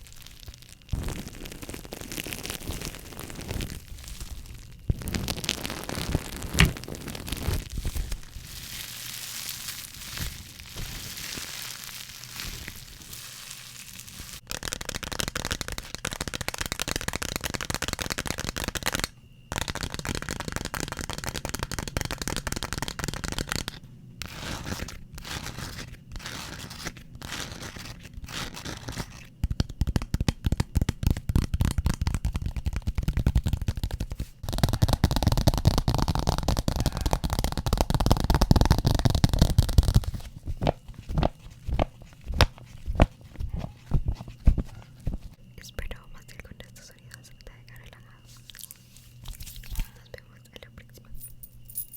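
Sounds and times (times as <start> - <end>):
crinkling and tearing textures: 0.0 - 45.4
scratching on objects: 0.0 - 45.4
fast tapping on objects: 14.4 - 23.8, 29.4 - 45.4.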